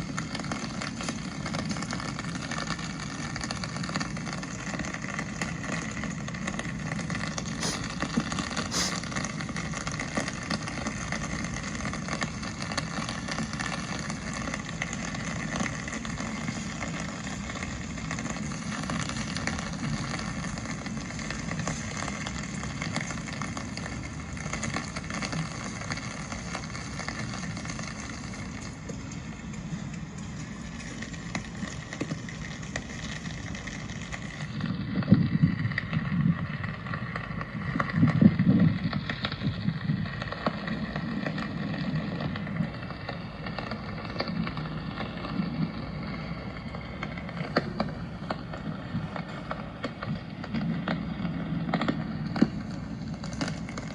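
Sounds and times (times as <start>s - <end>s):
rain hissing and pattering: 0.0s - 53.9s
street traffic passing: 6.7s - 9.8s, 39.0s - 53.9s.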